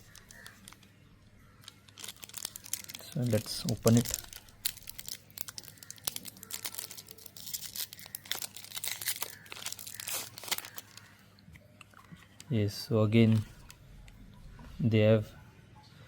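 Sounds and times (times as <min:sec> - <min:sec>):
plastic wrapper crinkling: 0:00.0 - 0:11.2, 0:13.2 - 0:14.2.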